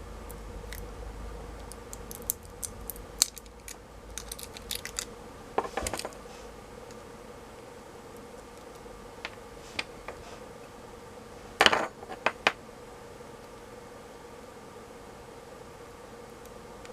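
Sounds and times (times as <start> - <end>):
faint steady hum: 0.0 - 16.9.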